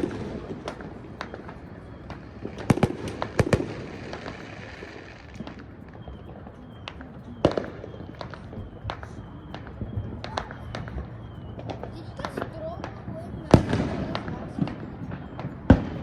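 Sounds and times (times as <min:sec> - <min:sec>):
firecrackers cracking and popping: 0:00.0 - 0:16.0.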